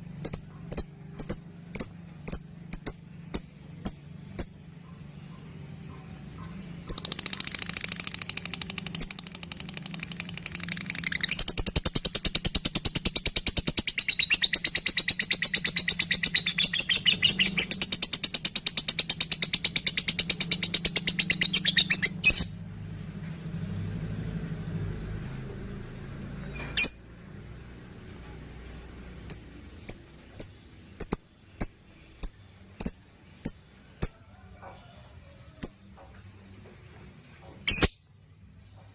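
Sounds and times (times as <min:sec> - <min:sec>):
lovebird chattering trill: 0:00.0 - 0:04.7, 0:06.9 - 0:22.6, 0:29.3 - 0:34.2.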